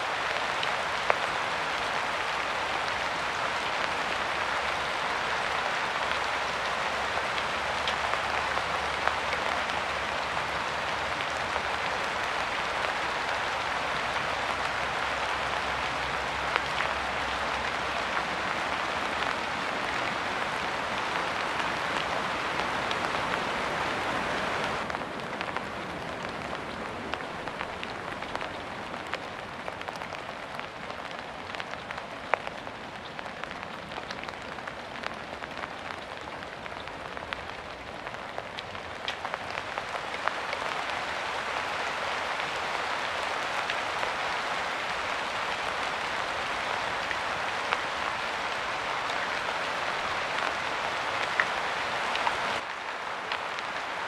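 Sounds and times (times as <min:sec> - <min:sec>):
rain hissing: 0:00.0 - 0:24.9, 0:38.7 - 0:54.0
raindrops ticking close by: 0:00.0 - 0:54.0.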